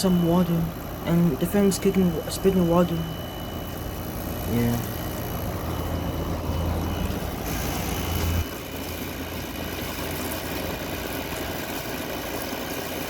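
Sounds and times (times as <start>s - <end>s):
low hum: 0.0s - 12.1s
air conditioner fan whoosh: 3.1s - 12.8s.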